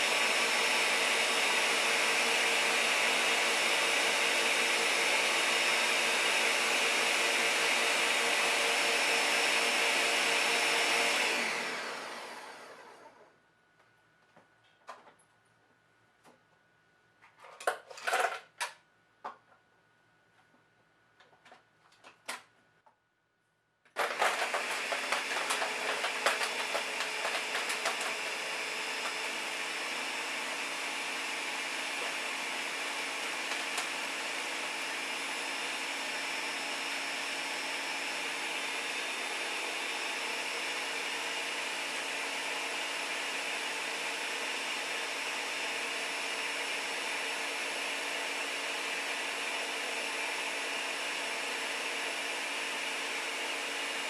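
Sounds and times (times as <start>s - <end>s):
blender motor running: 0.0s - 13.3s, 24.0s - 54.0s
frozen pieces clattering in blender: 23.9s - 29.4s.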